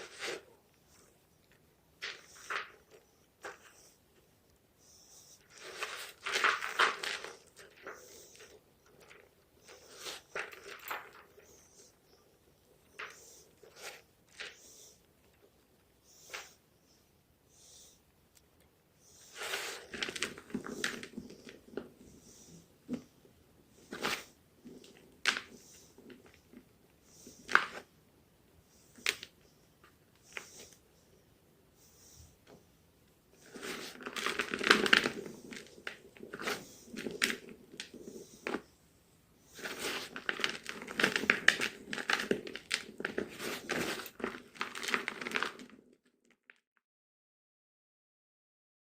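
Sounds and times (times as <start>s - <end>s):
chalk crunching and crackling: 0.0s - 1.1s, 5.4s - 12.2s, 19.2s - 21.9s, 33.4s - 38.6s, 39.5s - 45.7s
chalk crunching and crumbling: 39.5s - 45.8s.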